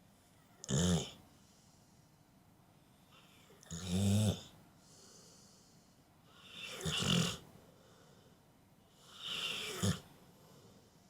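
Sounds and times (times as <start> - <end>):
dog snoring: 0.6 - 1.2, 3.6 - 4.5, 6.4 - 7.4, 9.0 - 10.1.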